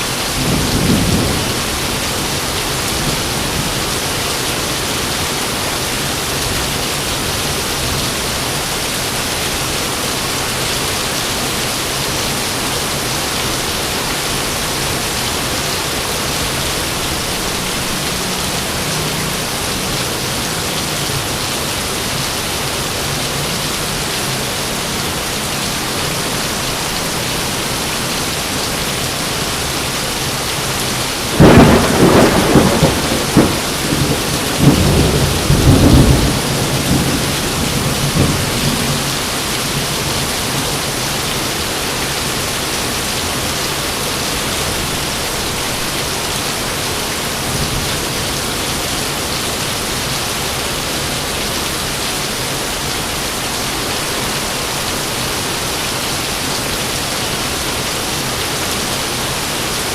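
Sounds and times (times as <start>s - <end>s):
steady rain: 0.0s - 59.9s
loud thunderclap: 0.4s - 1.7s, 31.3s - 39.0s.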